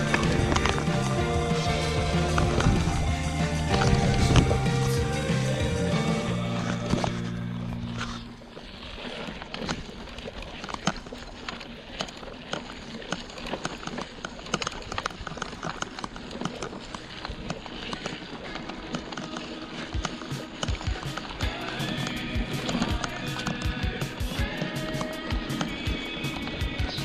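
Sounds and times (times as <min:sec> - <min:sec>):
background music: 0:00.0 - 0:08.2, 0:18.5 - 0:27.0
bike rattling over bumps: 0:00.0 - 0:27.0
bike tyres on stones: 0:00.0 - 0:27.0.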